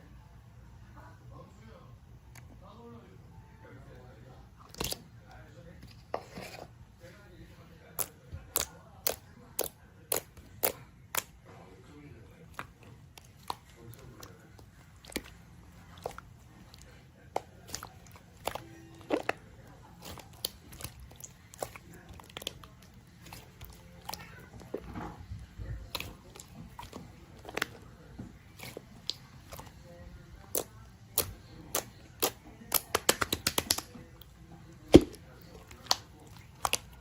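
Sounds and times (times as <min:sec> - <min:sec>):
slime air bubbles popping: 0:34.9 - 0:35.2.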